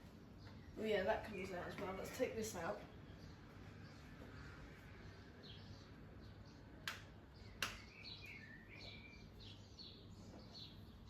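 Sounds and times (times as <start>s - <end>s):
faint high chirps: 7.4s - 10.6s.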